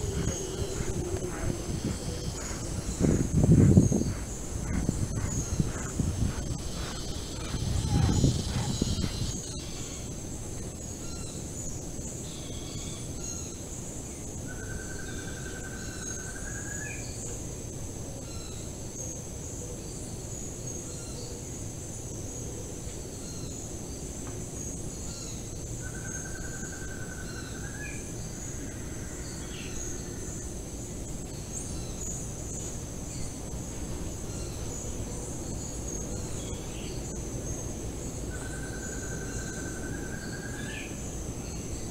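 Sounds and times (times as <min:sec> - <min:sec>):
low steady rumble: 0:00.0 - 0:09.3
buzzy bird trill: 0:00.0 - 0:09.8
bird chirps: 0:00.0 - 0:10.1
high-pitched insect drone: 0:00.0 - 0:11.8.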